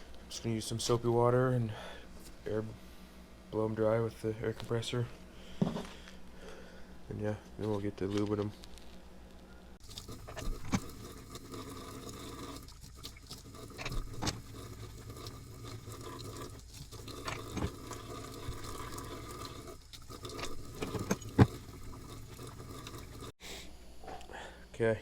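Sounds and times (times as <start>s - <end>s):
water splashing: 9.8s - 23.3s.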